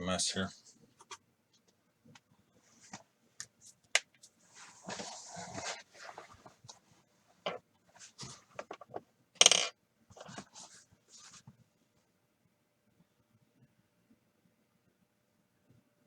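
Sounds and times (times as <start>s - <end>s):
cardboard scrape: 4.5s - 6.5s
cardboard boxes rustling: 4.6s - 6.7s.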